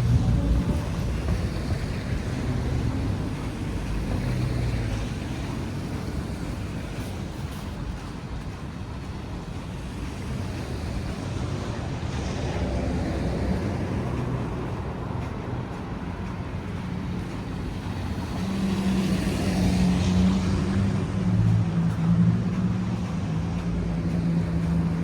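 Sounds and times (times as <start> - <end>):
traffic low rumble: 0.0 - 25.0
vehicle engine hum: 0.0 - 25.0.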